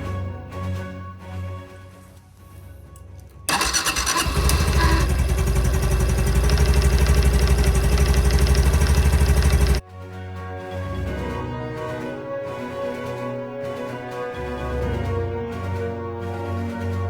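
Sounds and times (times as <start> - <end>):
motorcycle engine idling: 3.5 - 9.8.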